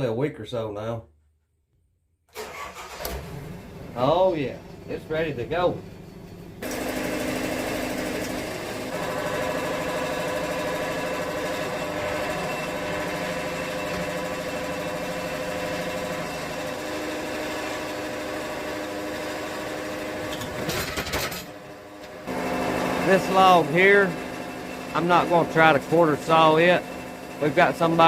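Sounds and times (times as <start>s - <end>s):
sawmill engine idling: 3.4s - 20.3s, 21.6s - 28.0s.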